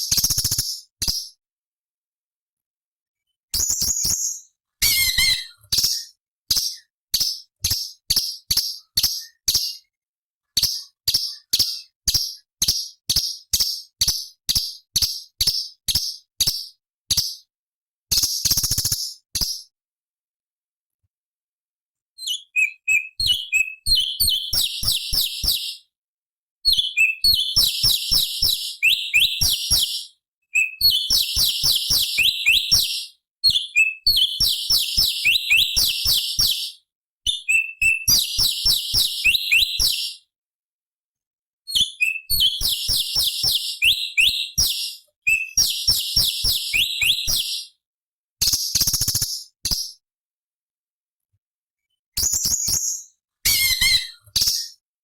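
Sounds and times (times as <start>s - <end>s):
bird singing rapid high notes: 3.6s - 9.8s, 26.8s - 36.8s, 37.4s - 40.2s, 41.8s - 47.7s, 52.3s - 54.8s.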